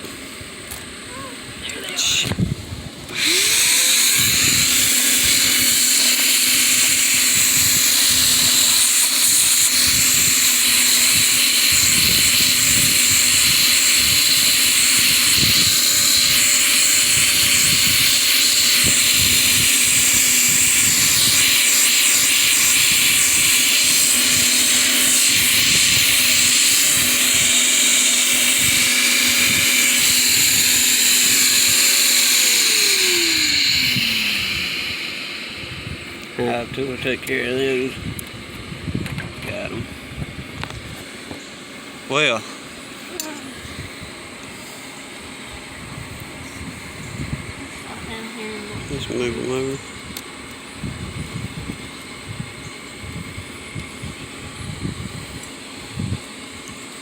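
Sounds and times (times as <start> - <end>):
small electric motor whine: 0.0 - 57.0
loud rushing hiss: 1.2 - 38.0.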